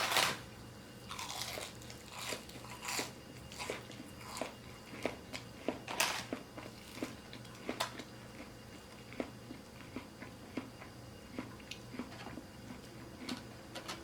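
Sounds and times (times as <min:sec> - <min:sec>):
chewing crunches: 0:01.0 - 0:13.4.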